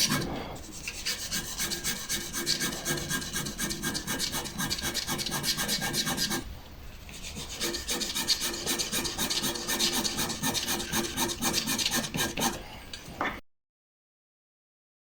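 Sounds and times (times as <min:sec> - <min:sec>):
pen nib scratching on paper: 0:00.0 - 0:06.4, 0:07.2 - 0:12.6.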